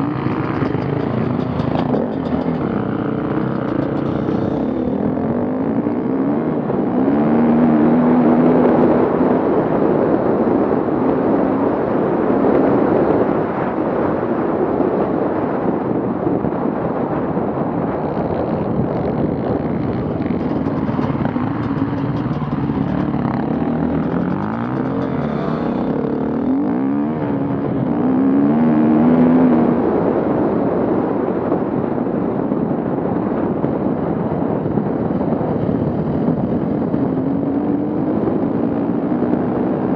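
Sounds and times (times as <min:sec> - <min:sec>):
off-road vehicle engines revving: 0:00.0 - 0:13.2, 0:18.0 - 0:31.0.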